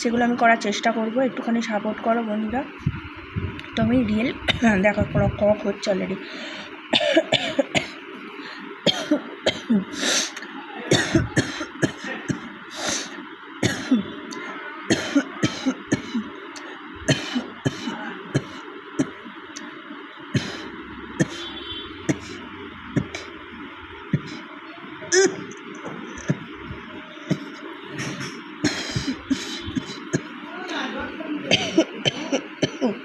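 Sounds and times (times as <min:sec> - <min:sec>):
woman coughing: 0:04.5 - 0:04.8, 0:06.9 - 0:08.0, 0:08.9 - 0:12.4, 0:13.6 - 0:14.1, 0:14.9 - 0:16.3, 0:17.1 - 0:19.2, 0:25.1 - 0:25.5, 0:28.6 - 0:30.3, 0:31.4 - 0:33.0.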